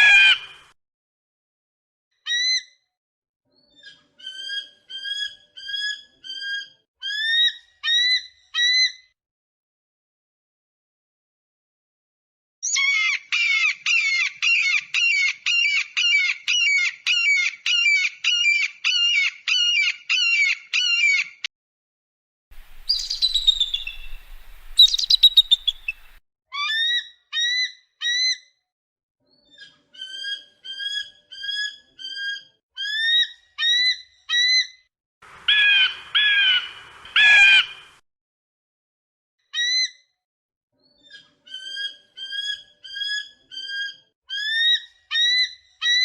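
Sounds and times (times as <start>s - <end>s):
eagle calls: 22.6s - 26.2s, 35.5s - 38.0s.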